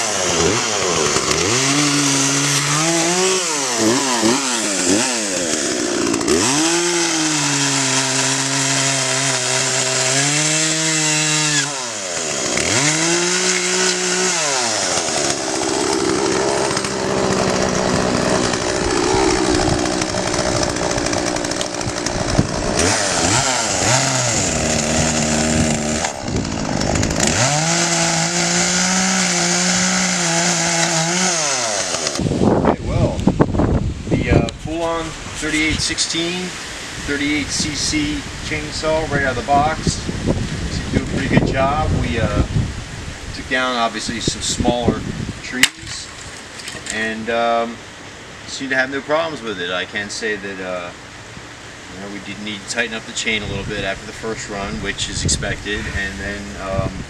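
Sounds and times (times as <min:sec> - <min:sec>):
chainsaw revving: 0:00.0 - 0:32.6, 0:45.4 - 0:47.7.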